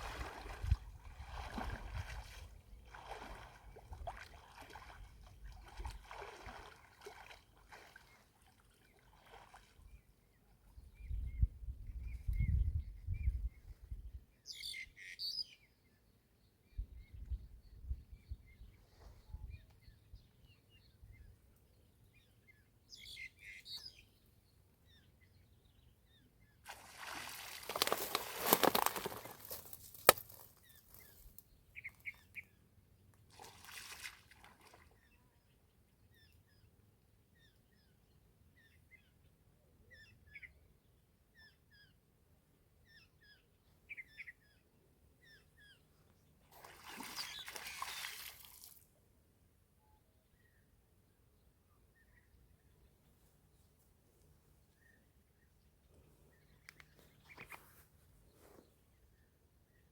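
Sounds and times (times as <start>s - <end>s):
water splashing: 0.0s - 8.2s, 26.7s - 29.3s, 46.6s - 48.8s
small birds chirping: 27.7s - 32.6s, 54.7s - 59.9s.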